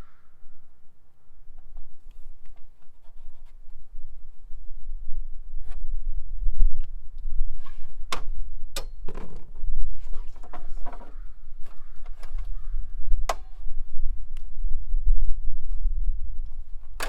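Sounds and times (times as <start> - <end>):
steady low rumble: 3.8 - 8.8, 9.5 - 17.0
tools and lumber clicking and knocking: 10.3 - 12.7, 13.3 - 13.6.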